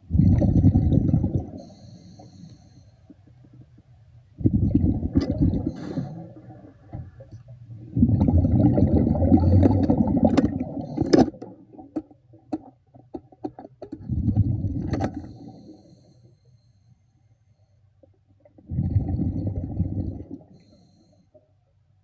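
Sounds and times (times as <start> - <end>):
diver exhaling bubbles underwater: 0.0 - 1.9, 4.4 - 11.9, 14.0 - 15.8, 18.5 - 20.6.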